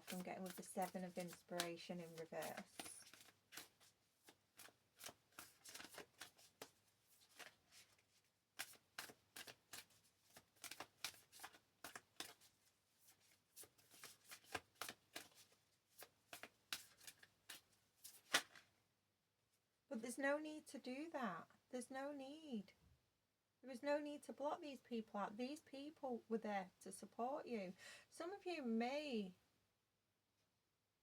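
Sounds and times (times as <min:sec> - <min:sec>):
cards being shuffled: 0:00.0 - 0:18.6.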